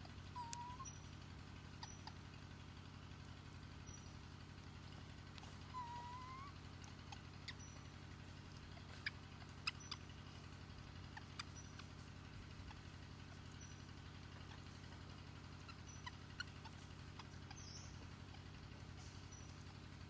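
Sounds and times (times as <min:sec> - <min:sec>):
high-pitched animal squeaks: 0:00.0 - 0:01.0, 0:01.7 - 0:02.3, 0:05.7 - 0:08.0, 0:08.6 - 0:10.4, 0:11.0 - 0:19.8
steady low hum: 0:00.0 - 0:20.0.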